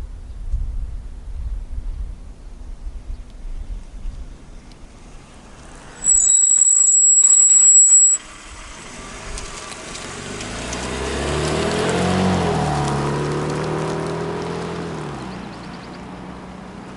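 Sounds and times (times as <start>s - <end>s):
car engine and road noise: 3.9s - 16.9s
high-pitched brake squeal: 5.7s - 8.4s.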